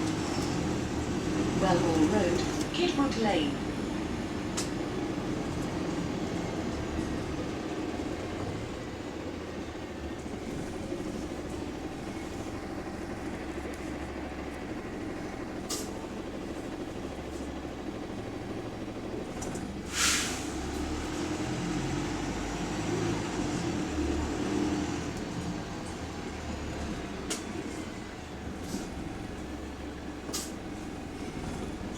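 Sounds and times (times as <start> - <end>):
bus engine drone: 0.0 - 31.9
air brake hiss: 19.9 - 20.6
compressed air burst: 19.9 - 20.6.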